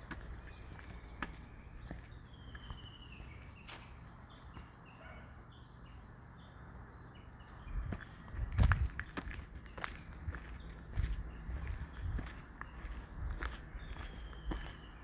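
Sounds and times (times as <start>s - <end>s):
small birds chirping: 0.0s - 15.0s
wind rumble on microphone: 7.6s - 14.3s.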